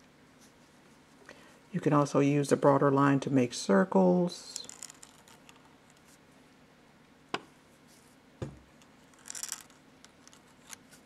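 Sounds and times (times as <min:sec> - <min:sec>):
dull knock: 0:08.4 - 0:08.6.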